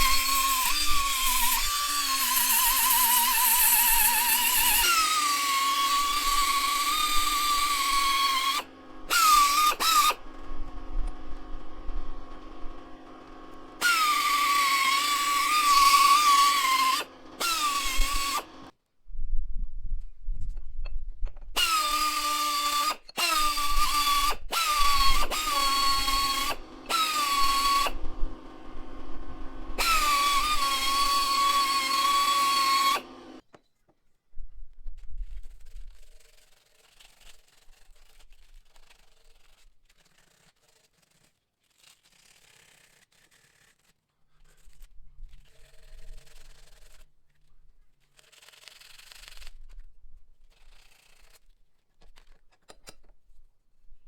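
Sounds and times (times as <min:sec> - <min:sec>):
power tool motor whining: 0:00.0 - 0:18.7, 0:21.5 - 0:33.4.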